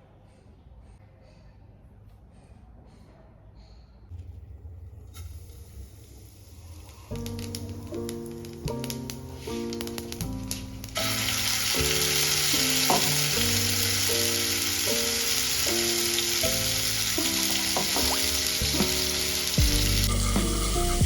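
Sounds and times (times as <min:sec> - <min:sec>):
food sizzling in oil: 0:06.3 - 0:21.0
soft background music: 0:07.1 - 0:21.0.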